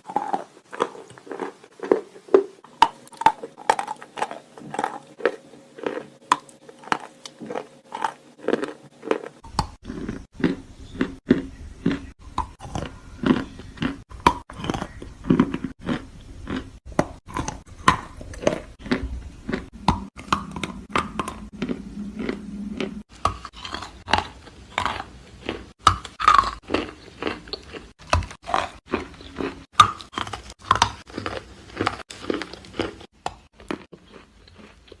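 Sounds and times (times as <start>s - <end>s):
chewing crunches: 0.0s - 35.0s.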